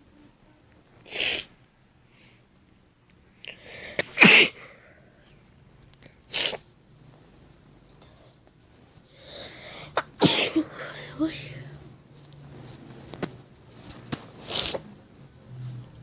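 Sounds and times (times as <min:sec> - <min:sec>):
person sneezing: 0:03.8 - 0:04.8, 0:09.7 - 0:11.4.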